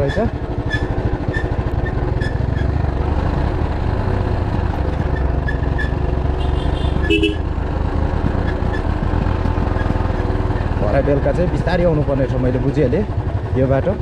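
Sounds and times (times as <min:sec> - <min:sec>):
motorcycle engine running: 0:00.0 - 0:14.0
short horn beep: 0:06.4 - 0:07.4.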